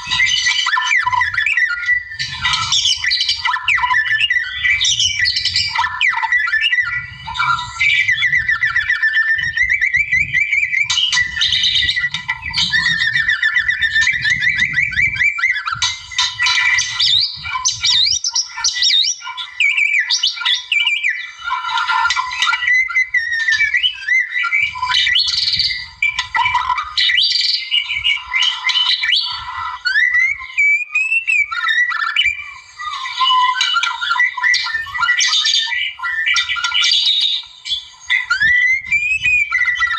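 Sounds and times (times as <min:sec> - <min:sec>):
bird singing varied song: 0:00.0 - 0:39.9.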